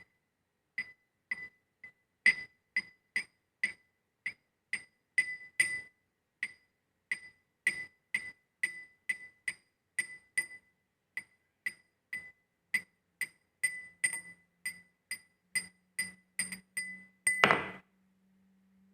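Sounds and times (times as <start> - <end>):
glass clinking against iron: 13.6 - 17.8.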